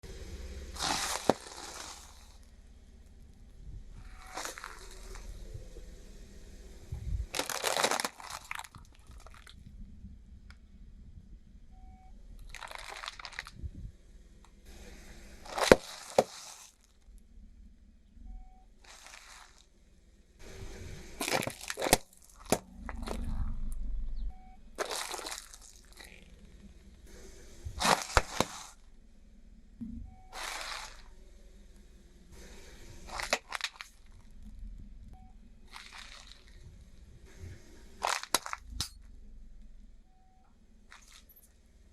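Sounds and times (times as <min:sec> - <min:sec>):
car tyre crushing crunchy objects: 0:00.0 - 0:10.7, 0:12.3 - 0:17.5, 0:18.3 - 0:40.1, 0:40.8 - 0:41.9
faint low rumble: 0:00.0 - 0:41.9
sharp cracks: 0:32.4 - 0:34.6, 0:37.3 - 0:39.1.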